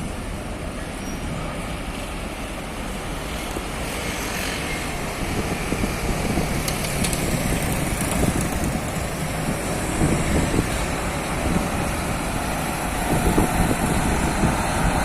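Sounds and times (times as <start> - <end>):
diesel engine rumbling: 4.8 - 15.0.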